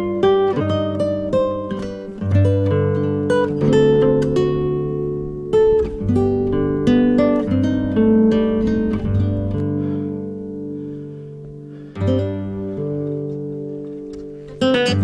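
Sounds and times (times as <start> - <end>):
acoustic guitar picking chords: 0.0 - 15.0.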